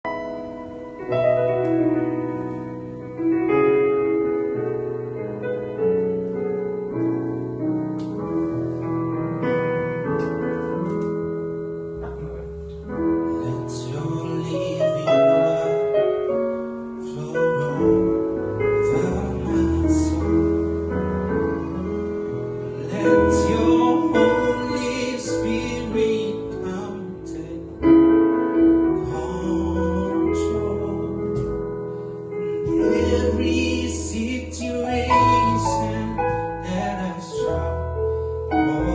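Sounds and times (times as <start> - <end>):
electric keyboard chords: 0.0 - 38.9
bass guitar: 11.8 - 13.2.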